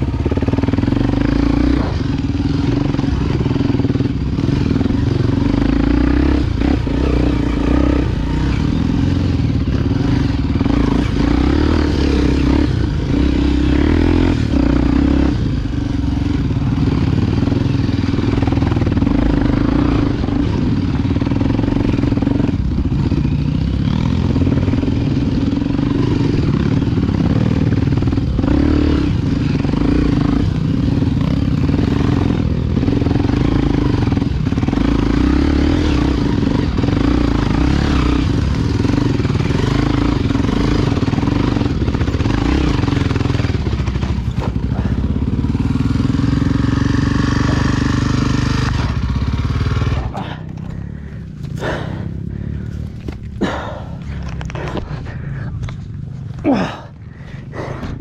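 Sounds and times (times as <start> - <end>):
motorcycle engine running: 0.0 - 58.0
bike knocking and clattering: 41.8 - 45.4, 48.7 - 56.4.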